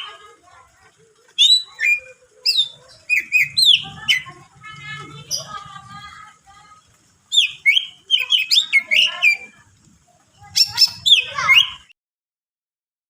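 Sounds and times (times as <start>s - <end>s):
bird singing chirpy phrases: 0.0s - 12.0s.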